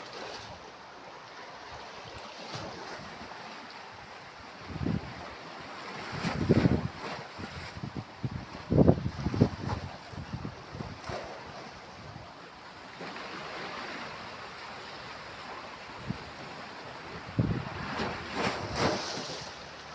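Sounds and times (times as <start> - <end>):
wind buffeting microphone: 4.6 - 5.3, 6.0 - 12.2, 16.0 - 19.0
sea waves breaking on beach: 8.6 - 19.9.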